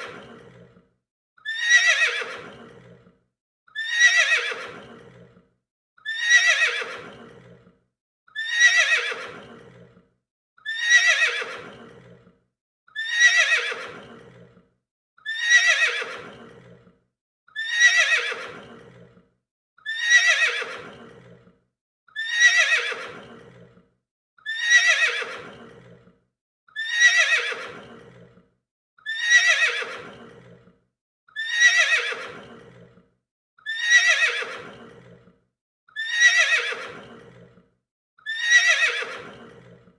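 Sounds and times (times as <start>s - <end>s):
horse neighing: 1.5s - 3.0s, 3.8s - 5.3s, 6.1s - 7.6s, 8.4s - 9.9s, 10.7s - 12.2s, 13.0s - 14.4s, 15.3s - 16.8s, 17.6s - 19.1s, 19.9s - 21.4s, 22.2s - 23.6s, 24.5s - 26.0s, 26.8s - 28.2s, 29.1s - 30.6s, 31.4s - 32.8s, 33.7s - 35.1s, 36.0s - 37.4s, 38.3s - 39.7s.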